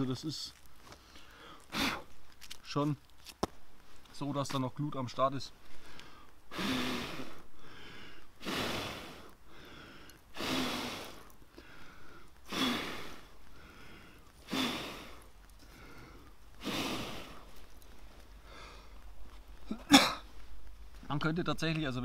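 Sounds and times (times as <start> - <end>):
person blowing on embers: 1.0 - 2.5, 5.6 - 21.0.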